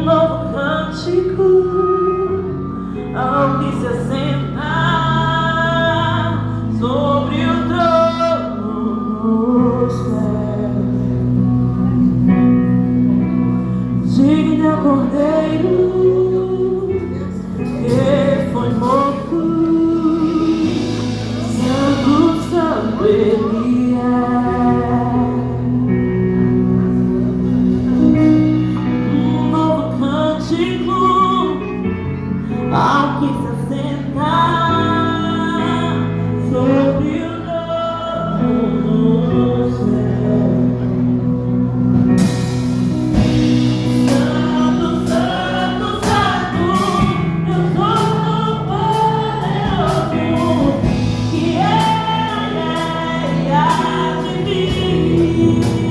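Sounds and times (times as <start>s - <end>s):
sustained low instrumental notes: 36.0s - 55.9s
voices singing together: 43.9s - 55.9s.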